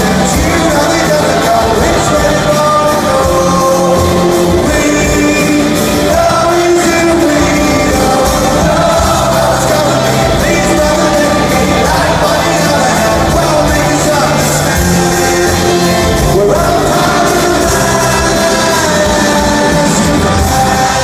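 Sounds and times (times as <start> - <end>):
live rock band playing: 0.0 - 21.0
person singing: 0.0 - 21.0.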